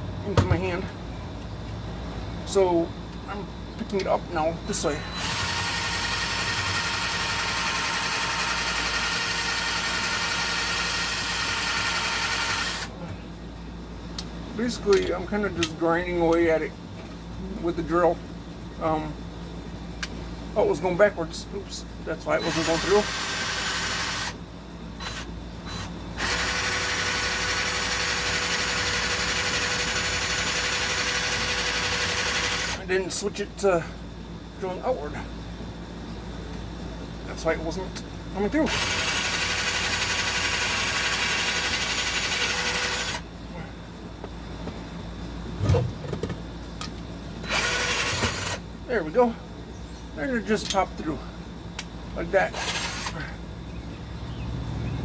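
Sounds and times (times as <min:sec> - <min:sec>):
drill bit grinding: 0:05.1 - 0:12.9, 0:22.4 - 0:24.4, 0:25.0 - 0:32.8, 0:38.7 - 0:43.2, 0:47.4 - 0:48.6
electric drill whining: 0:05.1 - 0:12.9, 0:22.4 - 0:24.4, 0:25.0 - 0:32.8, 0:38.7 - 0:43.2, 0:47.4 - 0:48.6, 0:52.6 - 0:53.2.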